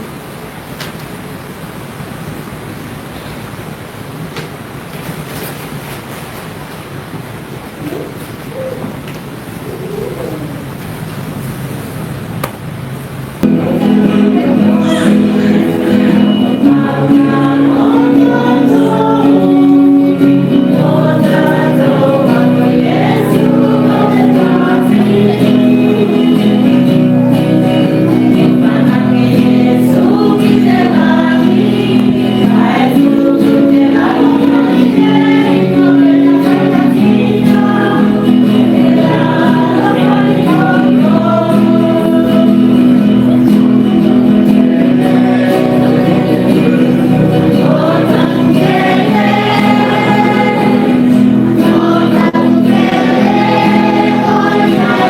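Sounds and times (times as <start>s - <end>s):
choir singing a hymn: 13.4s - 55.0s.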